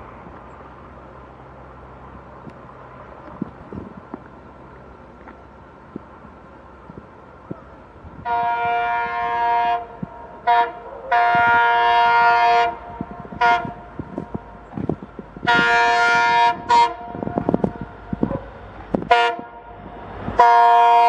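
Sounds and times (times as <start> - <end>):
locomotive air horn blasts: 8.2 - 14.6, 15.4 - 21.0.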